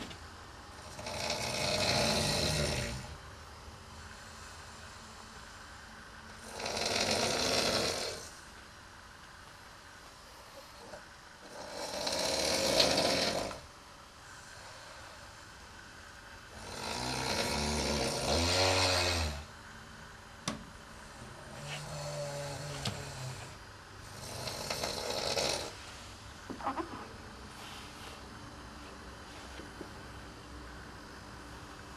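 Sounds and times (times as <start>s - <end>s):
person snoring loudly: 0.8s - 3.2s, 6.3s - 8.3s, 10.8s - 13.7s, 16.5s - 19.5s, 21.4s - 25.8s.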